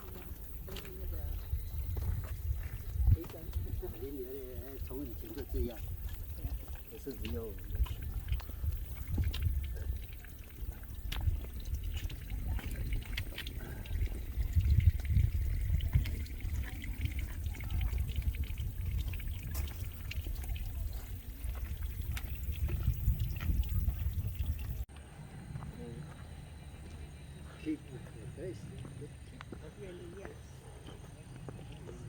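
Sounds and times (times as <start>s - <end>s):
wind buffeting microphone: 0.0s - 30.3s.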